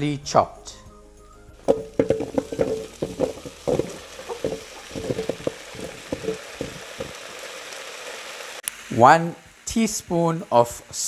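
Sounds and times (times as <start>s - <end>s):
potatoes sizzling in oil: 1.6s - 11.0s
utensil knocking against pan: 1.7s - 7.2s.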